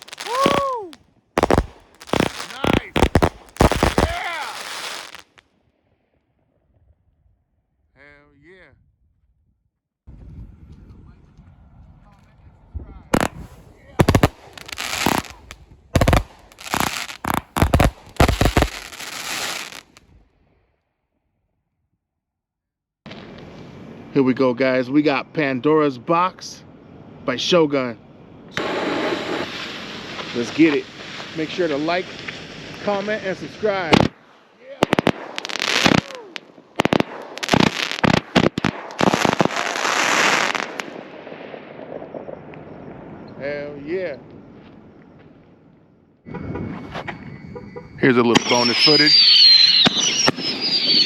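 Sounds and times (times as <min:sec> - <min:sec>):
firework bangs: 0:00.0 - 0:05.4, 0:13.2 - 0:20.0, 0:28.6 - 0:43.3, 0:48.2 - 0:51.0
firework crackling: 0:00.0 - 0:05.4, 0:13.2 - 0:20.0, 0:28.6 - 0:42.0, 0:48.2 - 0:51.0.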